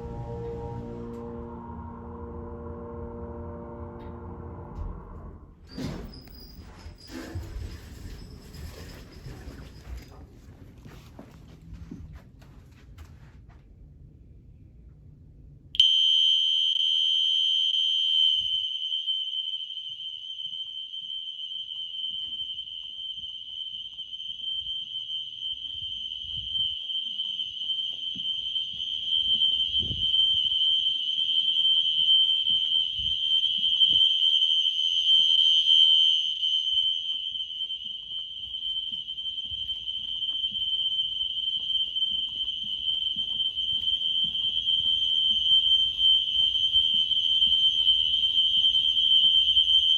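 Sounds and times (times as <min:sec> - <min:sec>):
fire alarm horns steady tone: 0:00.0 - 0:08.7, 0:15.8 - 0:49.9.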